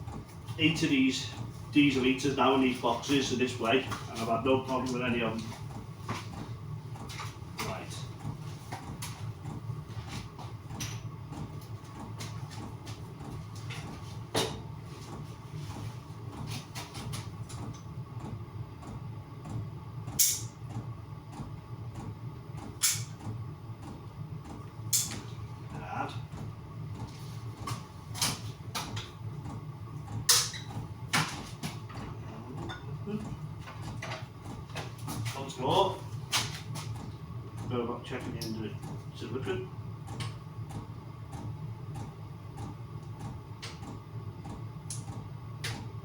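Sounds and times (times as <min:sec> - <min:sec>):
steady low hum: 0:00.0 - 0:46.0
tools clicking and knocking: 0:20.2 - 0:20.5.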